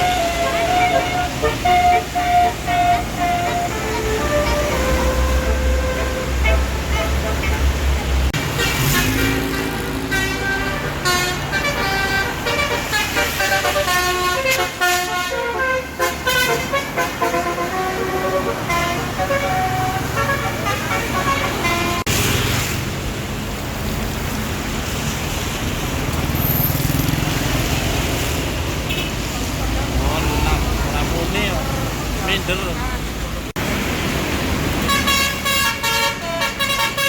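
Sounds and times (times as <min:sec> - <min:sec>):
bus engine running: 0:00.0 - 0:22.1
bus horn playing a tune: 0:00.0 - 0:22.1, 0:34.8 - 0:37.0.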